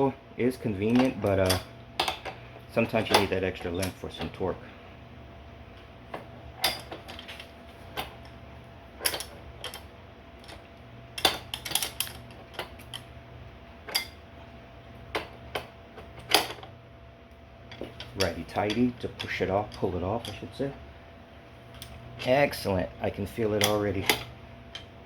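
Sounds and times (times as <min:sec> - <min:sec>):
steady low hum: 0:00.0 - 0:25.0
wrench clinking on metal: 0:00.8 - 0:04.4.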